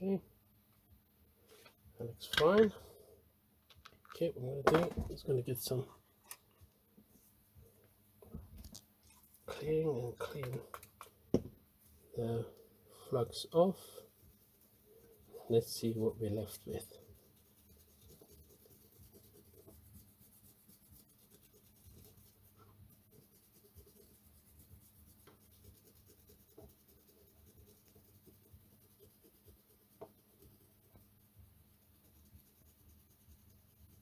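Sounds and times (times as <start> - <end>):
rubbing and scrubbing circuit board: 13.6 - 34.0.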